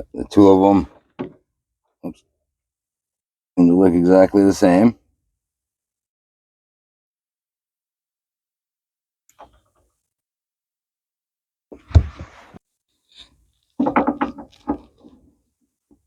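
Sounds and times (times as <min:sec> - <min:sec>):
knocks and clicks of small parts: 0:13.8 - 0:15.1.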